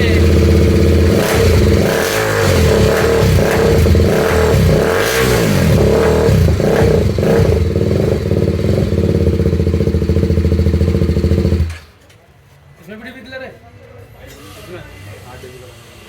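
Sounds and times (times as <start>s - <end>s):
motorcycle engine revving and idling: 0.0s - 11.9s.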